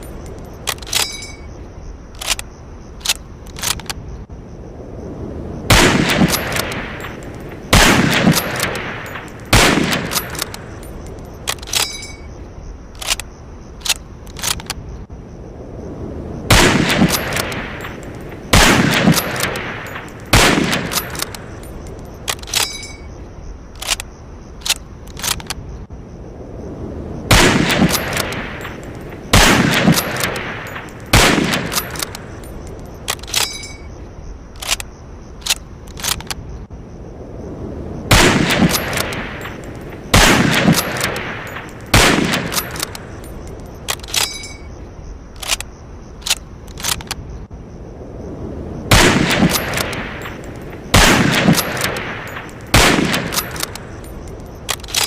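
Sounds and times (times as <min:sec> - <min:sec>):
metal clinks: 0:00.0 - 0:01.6, 0:06.2 - 0:12.4, 0:17.0 - 0:23.2, 0:27.8 - 0:34.0, 0:38.6 - 0:44.8, 0:49.4 - 0:55.0
sharp metallic clicks: 0:00.0 - 0:04.0, 0:05.8 - 0:12.3, 0:12.9 - 0:14.8, 0:16.6 - 0:25.6, 0:27.3 - 0:33.9, 0:34.5 - 0:36.4, 0:38.1 - 0:47.2, 0:48.9 - 0:55.0
rifle shots echoing: 0:05.7 - 0:10.6, 0:16.5 - 0:21.5, 0:27.3 - 0:32.4, 0:38.1 - 0:43.2, 0:48.9 - 0:54.1.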